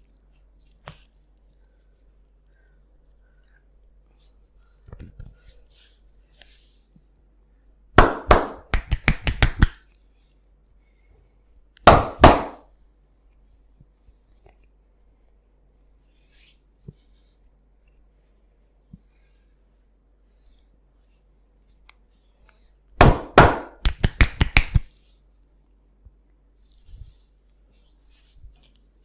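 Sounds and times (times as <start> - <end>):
faint rubbing and rustling: 0.0 - 7.9, 9.7 - 11.8, 12.6 - 23.0, 24.8 - 29.0
hands slapping on body: 8.0 - 9.8, 11.8 - 12.7, 23.0 - 24.9.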